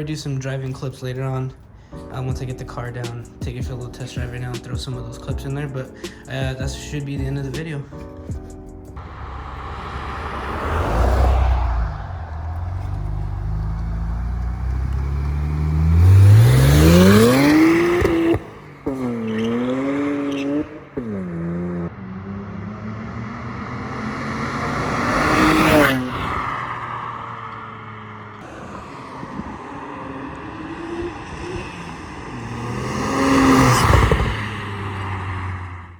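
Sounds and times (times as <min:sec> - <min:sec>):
car engine revving: 0:07.9 - 0:35.9.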